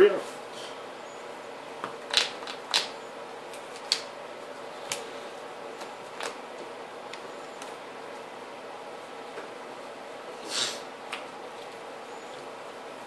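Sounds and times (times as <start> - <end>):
steady background hum: 0.0 - 13.0.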